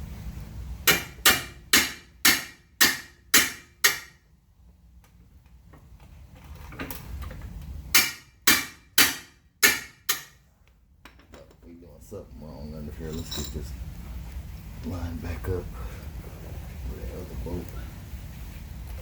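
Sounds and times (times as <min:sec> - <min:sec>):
hammer tapping a bolt: 0:08.0 - 0:10.4.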